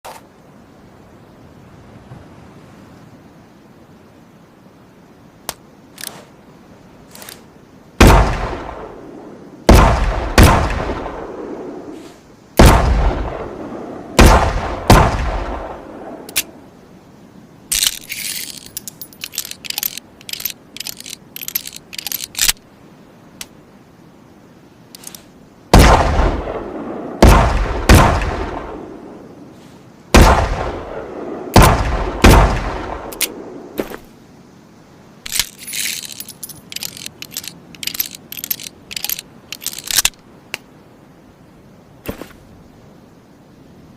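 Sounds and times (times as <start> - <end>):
small sharp clicks: 24.9 - 25.3
revolver gunshots with echo: 30.2 - 31.0.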